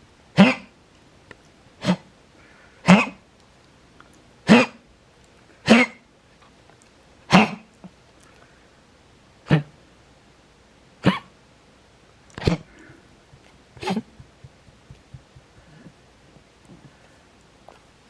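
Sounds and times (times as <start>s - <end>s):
dog coughing: 0.4s - 0.7s, 1.8s - 2.1s, 2.8s - 3.2s, 4.5s - 4.8s, 5.6s - 6.0s, 7.3s - 7.7s, 11.0s - 11.3s, 12.4s - 15.9s.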